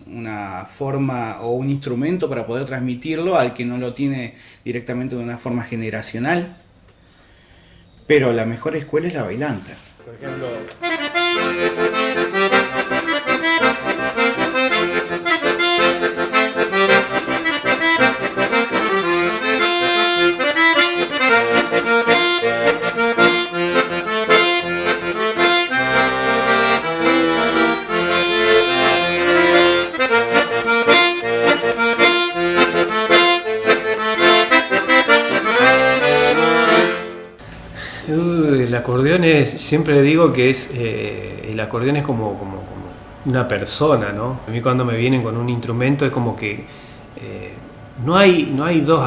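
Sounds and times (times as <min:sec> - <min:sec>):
accordion playing folk tune: 0:10.0 - 0:37.5.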